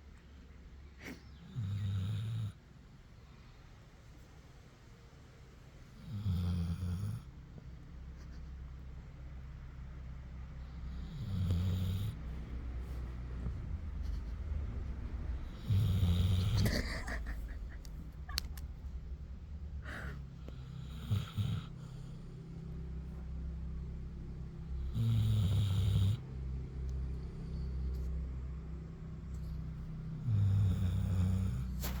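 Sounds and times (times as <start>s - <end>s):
dog snoring: 1.0s - 2.7s, 5.9s - 7.6s, 10.5s - 14.3s, 15.4s - 17.4s, 19.8s - 22.6s, 24.7s - 26.2s, 29.3s - 32.0s.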